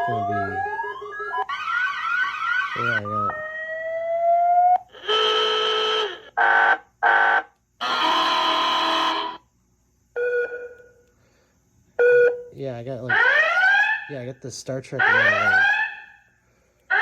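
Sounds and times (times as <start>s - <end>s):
buzzing alarm blasts: 0.0s - 9.4s, 15.0s - 16.2s.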